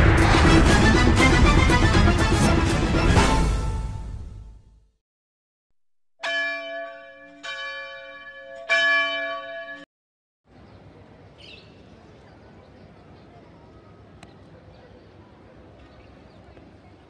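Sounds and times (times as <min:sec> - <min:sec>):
metal bell ringing: 0:06.2 - 0:09.9.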